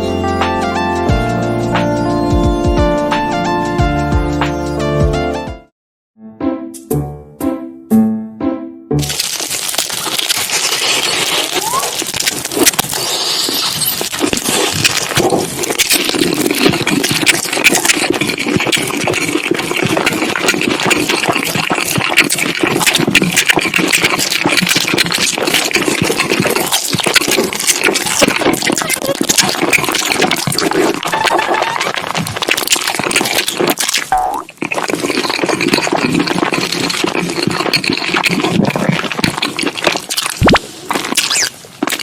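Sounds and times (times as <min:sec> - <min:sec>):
crunching food: 0:09.0 - 0:42.0
wet chewing: 0:09.0 - 0:42.0.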